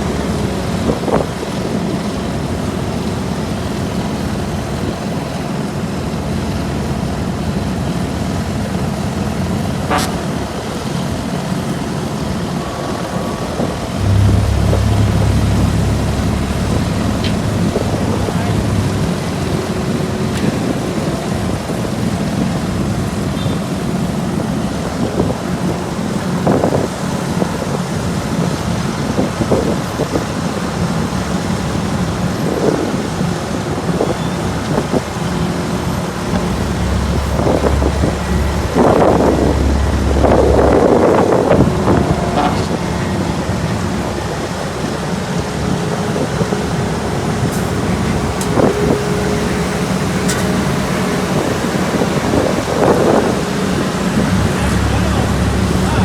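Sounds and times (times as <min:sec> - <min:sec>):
diesel paving machinery running: 0:00.0 - 0:56.0
low rumble: 0:13.8 - 0:20.2, 0:36.3 - 0:44.8, 0:46.1 - 0:56.0.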